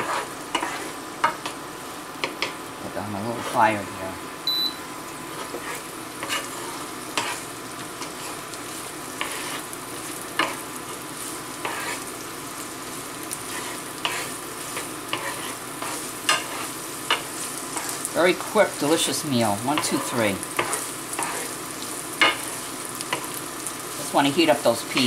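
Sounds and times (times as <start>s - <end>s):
utensil scraping and knocking pan: 0.0s - 1.5s, 5.4s - 7.4s, 13.5s - 14.3s, 15.1s - 18.0s
food sizzling in a pan: 0.0s - 25.0s.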